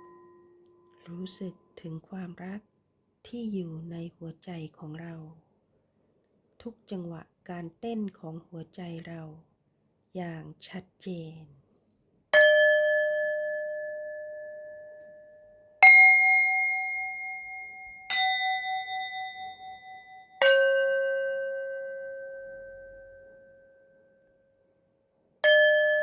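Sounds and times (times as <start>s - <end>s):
singing bowls ringing: 0.0s - 1.1s, 12.4s - 24.2s, 25.4s - 26.0s.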